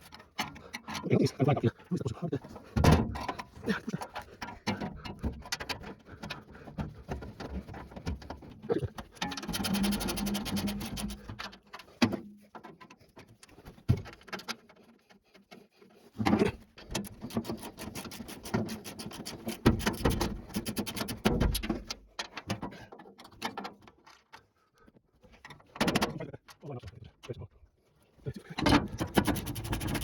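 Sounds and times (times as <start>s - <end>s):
clicks knocks and scraping: 0.0s - 27.4s, 28.4s - 30.0s.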